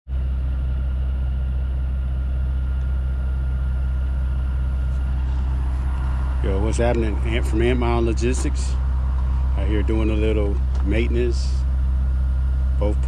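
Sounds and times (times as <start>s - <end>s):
heavy engine idling: 0.1s - 13.0s.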